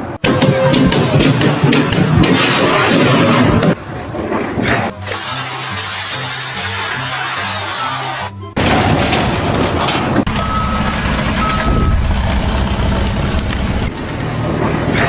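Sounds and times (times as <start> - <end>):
heavy vehicle engine running: 2.7 - 15.0
reversing alarm beeps: 10.3 - 13.9
faint high whine: 10.3 - 14.0.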